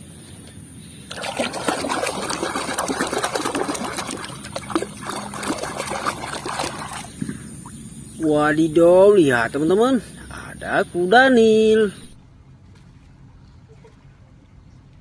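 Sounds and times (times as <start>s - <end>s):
water splashing and trickling: 1.1s - 7.9s.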